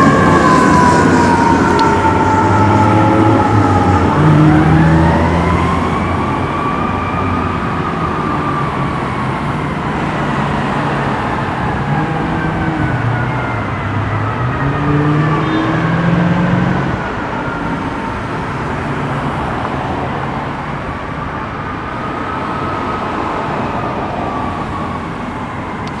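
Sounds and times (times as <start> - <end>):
fire truck siren wailing: 0.0 - 26.0
traffic noise: 0.0 - 26.0
air horn blasts: 15.2 - 16.8.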